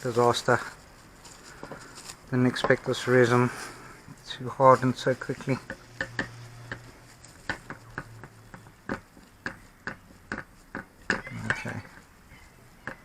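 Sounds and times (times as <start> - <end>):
hand tools clicking and tapping: 1.4 - 2.9, 5.0 - 13.0.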